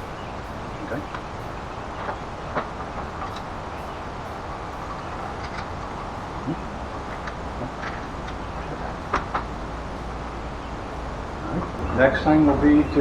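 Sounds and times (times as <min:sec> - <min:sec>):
steady background noise: 0:00.0 - 0:13.0
hand tools clicking and tapping: 0:02.0 - 0:03.9, 0:04.7 - 0:09.7.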